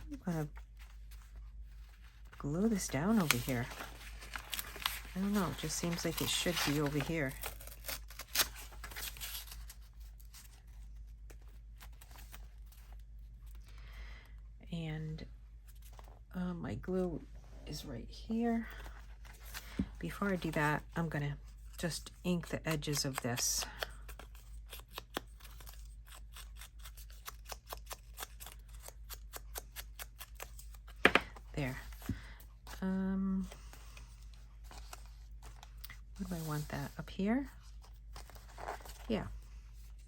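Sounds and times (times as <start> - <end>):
paper rustling and tapping: 31.0 - 31.4.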